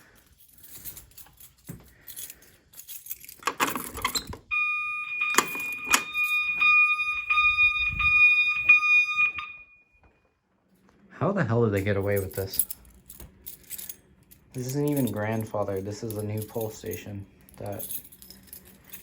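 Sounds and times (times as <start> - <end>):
metallic rattling and clicks: 0.2 - 4.4
fire alarm high electronic tone: 4.5 - 10.1.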